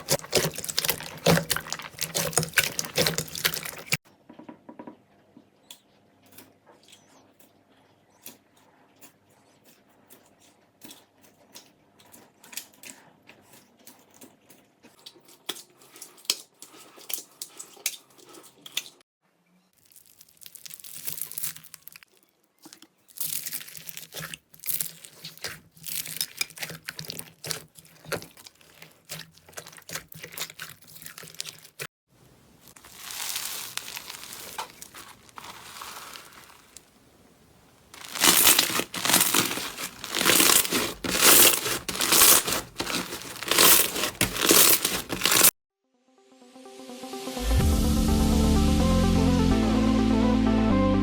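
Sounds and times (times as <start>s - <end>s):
slime squeezed crackling: 0.0s - 4.0s, 19.8s - 31.8s, 32.4s - 45.5s.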